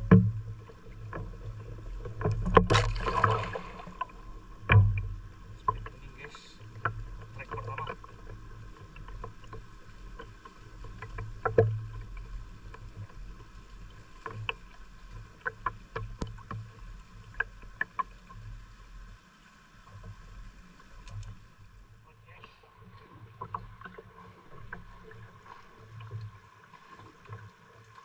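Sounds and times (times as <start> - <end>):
knocks and clicks of boat gear: 0.0 - 18.5
low rumble of water and wind: 0.0 - 28.0.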